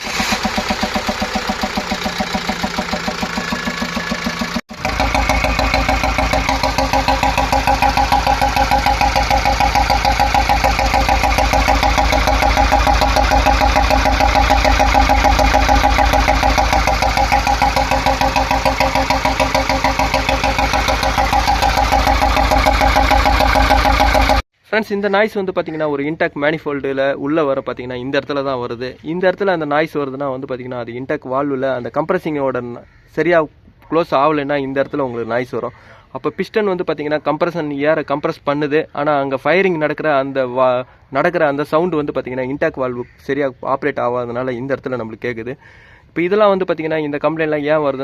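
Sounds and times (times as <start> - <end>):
diesel engine idling: 0.0 - 24.5.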